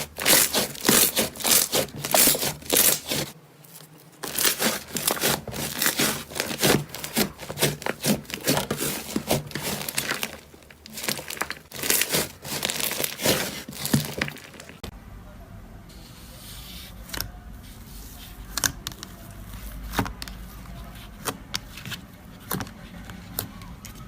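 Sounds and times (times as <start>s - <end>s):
slime squelching and popping: 0.0s - 3.4s, 4.2s - 14.9s.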